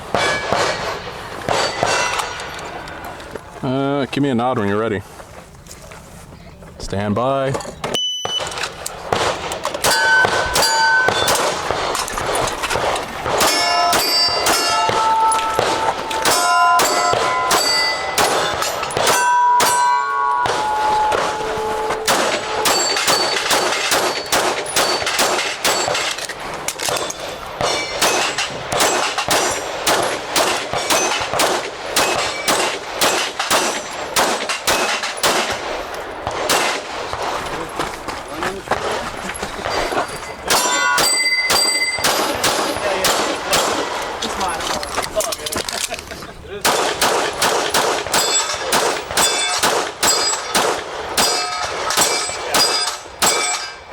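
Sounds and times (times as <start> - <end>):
steel targets ringing: 0.1 - 3.1, 8.0 - 26.2, 26.9 - 35.6, 39.4 - 44.6, 48.0 - 53.9
rapid pistol fire: 9.1 - 19.2, 22.1 - 26.2, 27.6 - 37.4, 46.7 - 53.5.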